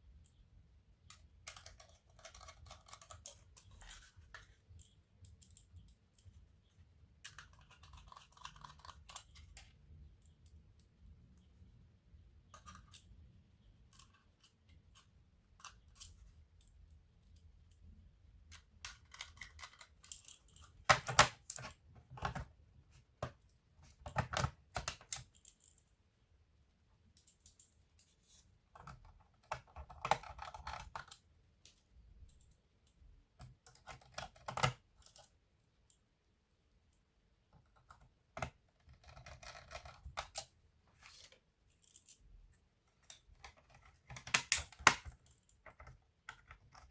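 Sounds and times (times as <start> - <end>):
clicks and taps on laptop keys: 1.0 - 6.4, 7.2 - 11.5, 18.5 - 22.5, 28.7 - 31.2, 33.3 - 35.3, 37.5 - 40.5, 43.0 - 46.9.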